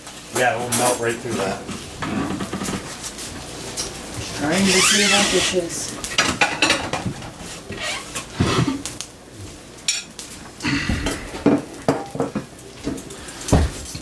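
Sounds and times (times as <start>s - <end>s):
dishes and cutlery clattering: 0.3s - 7.4s, 11.0s - 14.0s.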